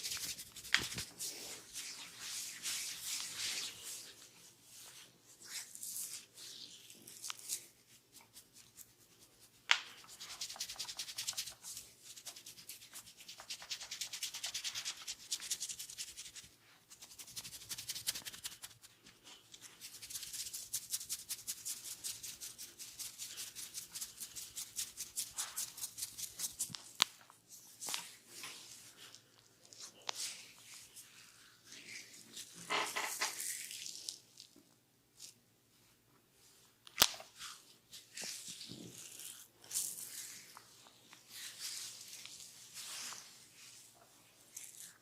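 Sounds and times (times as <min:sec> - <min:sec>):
hands rubbing scalp and hair: 0:00.0 - 0:34.0, 0:37.2 - 0:45.0.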